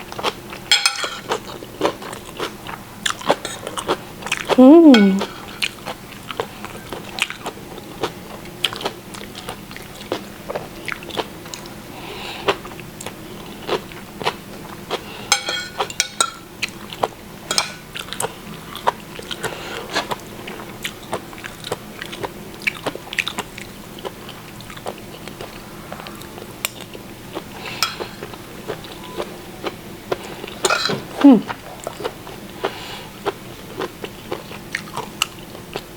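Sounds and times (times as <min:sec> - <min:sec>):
person chewing: 0:01.2 - 0:11.7, 0:12.4 - 0:15.9, 0:18.0 - 0:35.9.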